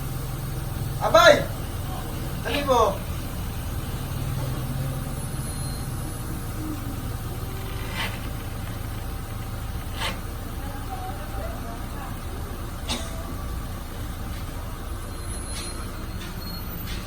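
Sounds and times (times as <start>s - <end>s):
vehicle engine idling: 0.0s - 17.0s.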